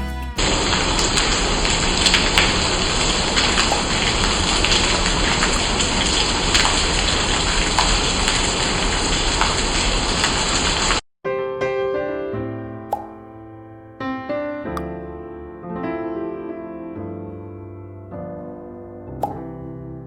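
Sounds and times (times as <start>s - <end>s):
heavy rain: 0.4s - 11.0s
raindrops ticking on a surface: 0.4s - 11.0s.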